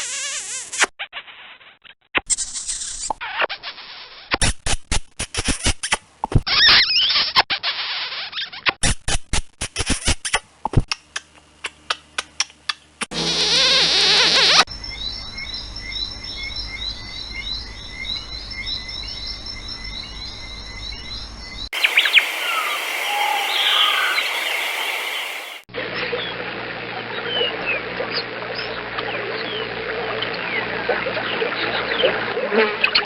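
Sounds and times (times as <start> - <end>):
animal chirping: 21.8 - 25.6
loud noisy sound: 21.8 - 25.7.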